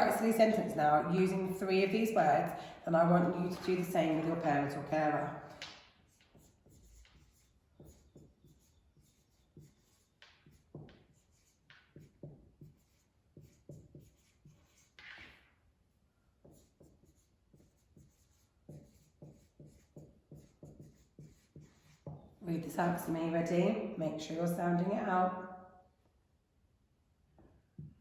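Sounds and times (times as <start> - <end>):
marker writing on whiteboard: 3.0 - 23.2.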